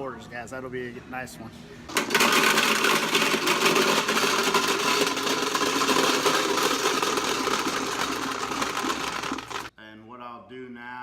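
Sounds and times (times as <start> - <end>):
coin counting machine rattling: 1.9 - 9.7.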